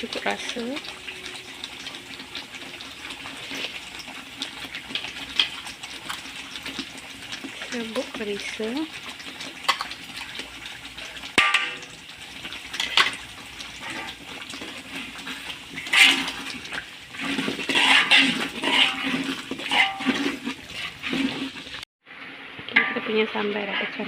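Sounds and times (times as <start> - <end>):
spatula stirring thick sauce: 0.0 - 11.4, 12.0 - 21.8
spatula scraping a pan: 12.7 - 24.0.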